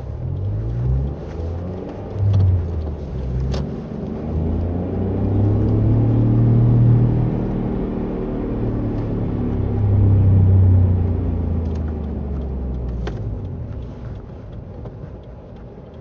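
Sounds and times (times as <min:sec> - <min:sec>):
road noise: 0:00.0 - 0:16.0.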